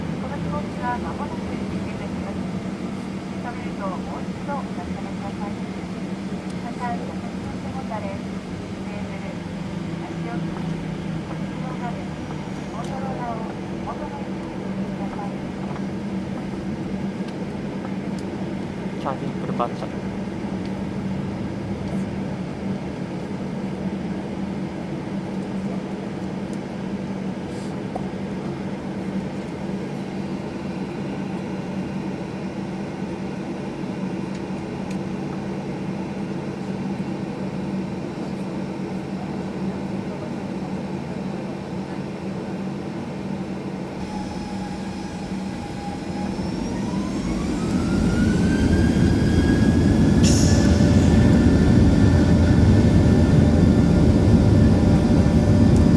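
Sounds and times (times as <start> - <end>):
aircraft cabin engine hum: 0.0 - 55.9
jet engines spooling up: 43.9 - 55.9.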